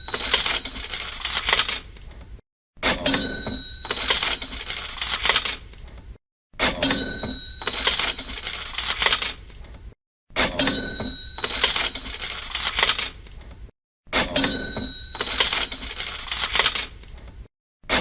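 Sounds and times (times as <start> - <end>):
cash register bell ring: 0.0 - 1.8, 2.8 - 5.6, 6.7 - 9.4, 10.4 - 13.2, 14.2 - 17.0
coins jingling into drawer: 0.0 - 2.0, 3.0 - 5.8, 6.8 - 9.6, 10.6 - 13.3, 14.4 - 17.1.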